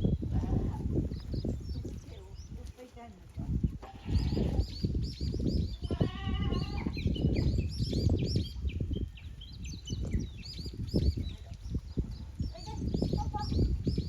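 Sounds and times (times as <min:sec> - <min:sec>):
small birds chirping: 0:00.0 - 0:14.0
wind gusting across microphone: 0:00.0 - 0:14.0
goat bleat: 0:03.8 - 0:04.6, 0:05.9 - 0:06.9.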